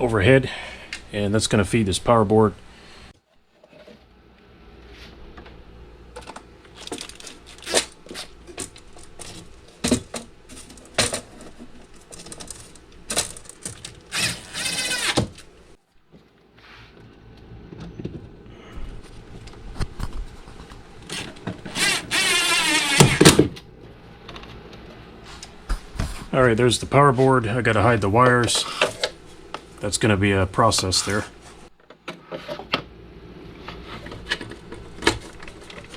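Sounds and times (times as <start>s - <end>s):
tools and wire rattling: 6.2s - 15.6s.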